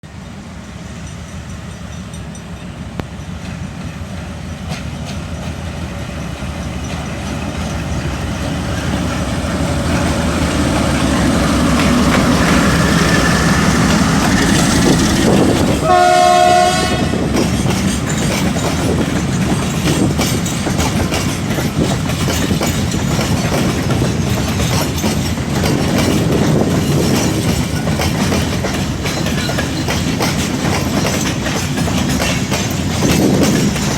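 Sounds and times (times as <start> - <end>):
diesel locomotive: 0.0 - 33.9
wagons clacking over rail joints: 1.0 - 33.9
train horn blast: 15.8 - 17.4.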